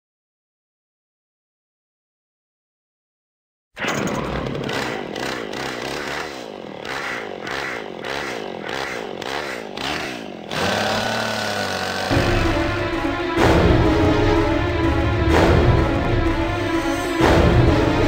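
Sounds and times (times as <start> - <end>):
chainsaw revving: 4.2 - 13.4
steady droning: 4.6 - 18.0.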